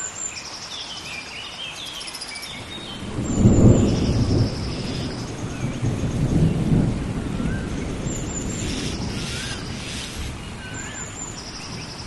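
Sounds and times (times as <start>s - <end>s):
steady rain: 0.0s - 12.0s
thunder rumble: 2.9s - 12.0s
birds calling: 8.1s - 12.0s.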